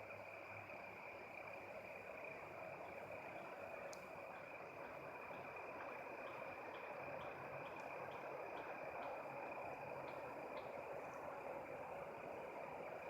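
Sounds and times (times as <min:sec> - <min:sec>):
steady hiss: 0:00.0 - 0:13.0
soft ticks: 0:03.8 - 0:09.2.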